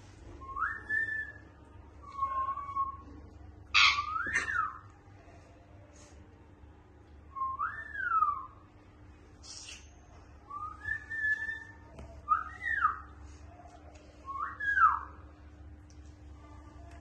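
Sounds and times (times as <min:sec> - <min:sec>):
parrot whistling: 0:03.7 - 0:04.8.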